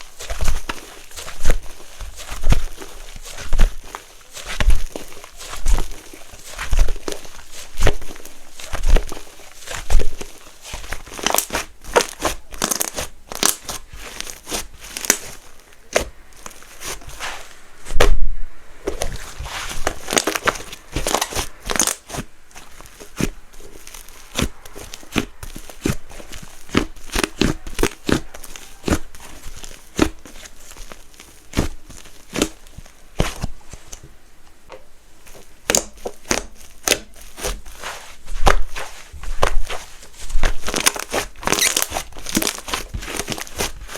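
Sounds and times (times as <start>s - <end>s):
slime squished by hand: 0.0s - 34.1s, 34.7s - 43.9s.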